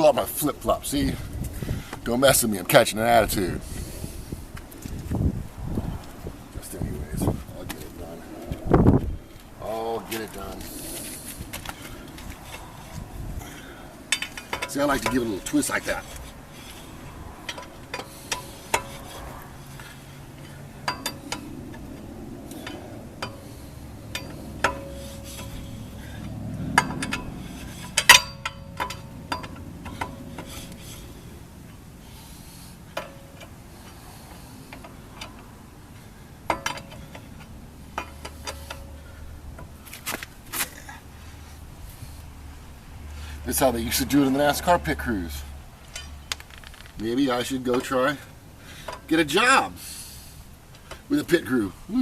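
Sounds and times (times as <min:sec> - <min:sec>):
lug wrench clinking on nuts: 0:11.6 - 0:31.9, 0:32.8 - 0:40.9, 0:43.5 - 0:49.7.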